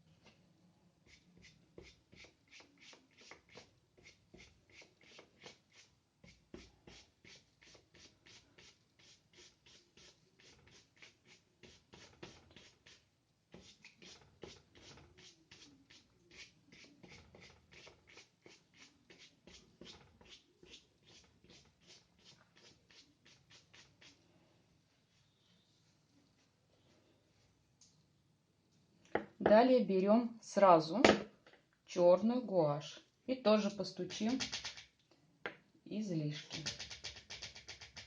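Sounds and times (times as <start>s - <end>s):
dry brush scratching on paper: 1.1s - 24.2s, 34.1s - 34.9s, 36.4s - 38.0s.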